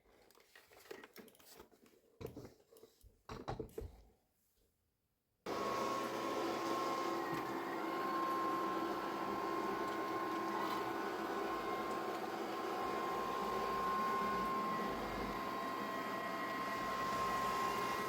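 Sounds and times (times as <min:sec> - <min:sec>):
robot vacuum motor whirring: 0:05.5 - 0:18.0.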